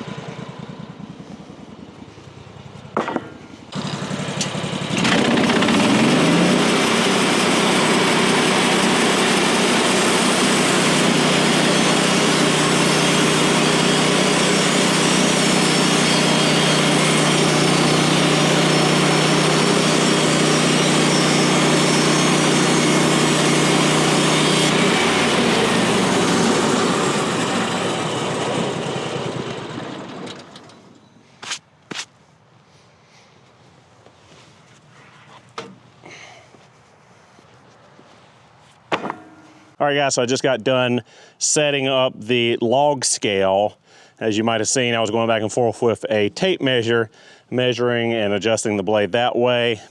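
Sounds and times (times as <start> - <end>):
sawmill gas engine revving: 3.6 - 30.9.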